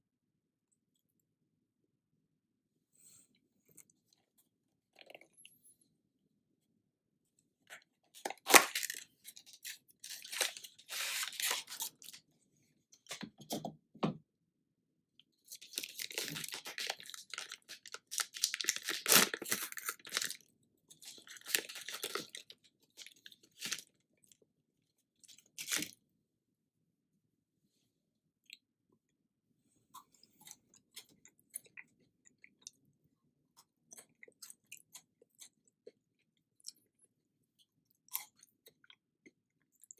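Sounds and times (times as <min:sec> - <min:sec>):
crunching and chewing: 0:04.9 - 0:05.7, 0:07.6 - 0:12.3, 0:15.5 - 0:24.4, 0:33.5 - 0:39.9.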